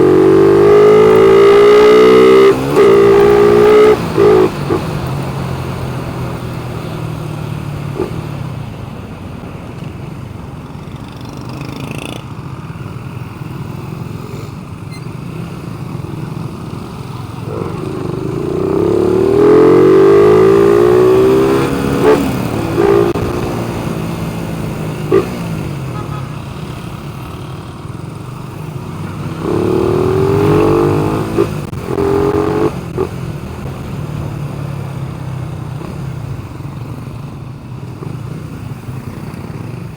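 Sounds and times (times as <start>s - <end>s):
vehicle engine revving: 0.0s - 6.2s, 17.3s - 26.2s, 29.1s - 33.9s.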